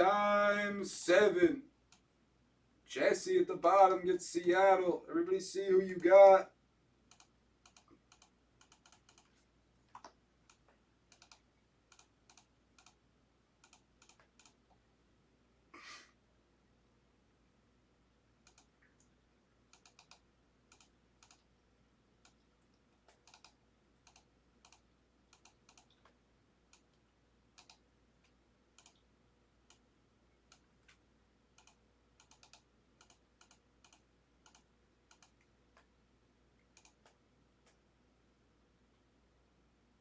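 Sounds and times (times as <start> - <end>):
keyboard typing clicks: 7.1 - 9.3, 9.9 - 13.0, 13.6 - 14.7, 18.5 - 18.7, 19.7 - 21.5, 23.0 - 27.0, 27.6 - 27.8, 28.8 - 29.0, 31.6 - 35.9, 36.8 - 37.8.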